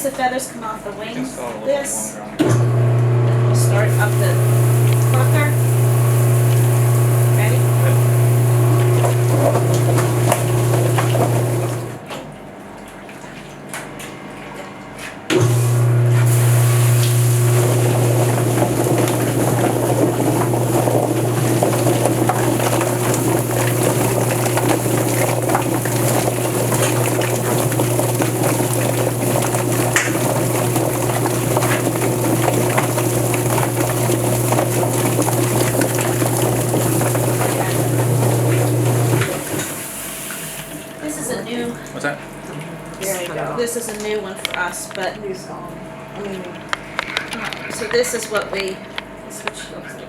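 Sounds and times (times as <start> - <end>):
motor hum: 2.4 - 12.1, 15.3 - 40.2
hissing water spray: 3.6 - 12.0, 15.4 - 40.9.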